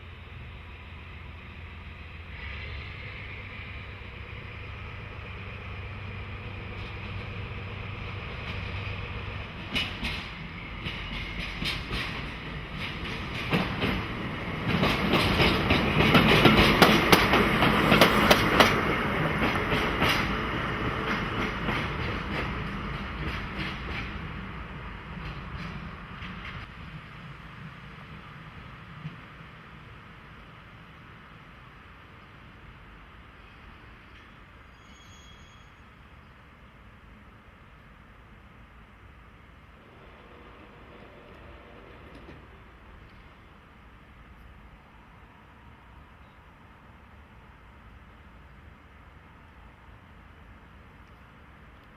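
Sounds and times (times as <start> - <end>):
train passing: 0.0 - 51.9
wheels clicking over rail joints: 9.6 - 24.4, 39.8 - 43.5.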